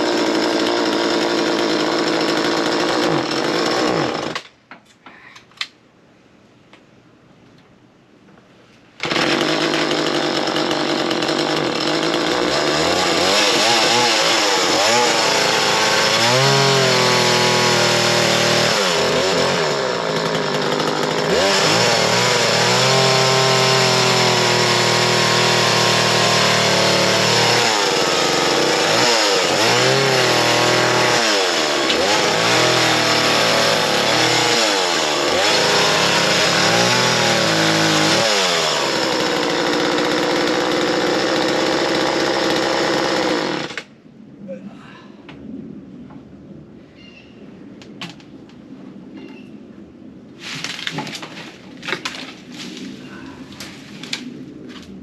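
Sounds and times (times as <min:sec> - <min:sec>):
chainsaw cutting wood: 0:00.0 - 0:04.5, 0:09.0 - 0:43.9.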